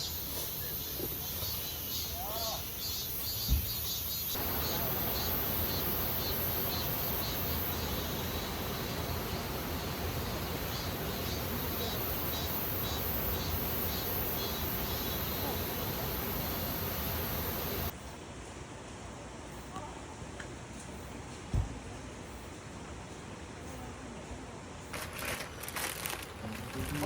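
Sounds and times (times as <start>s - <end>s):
insects chirping in pulses: 0.0s - 17.9s
steady rushing noise: 4.4s - 18.0s.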